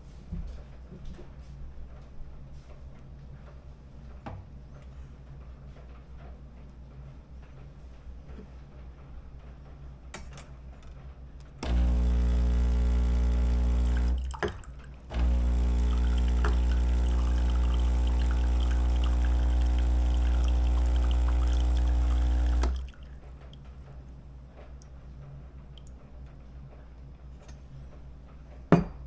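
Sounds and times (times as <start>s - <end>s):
espresso machine pump humming: 11.6s - 23.3s.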